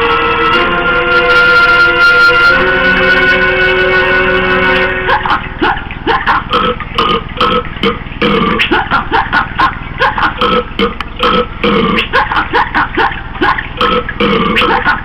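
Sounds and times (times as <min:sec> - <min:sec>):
short burps: 0:06.1 - 0:09.3, 0:10.4 - 0:12.2, 0:13.8 - 0:14.8.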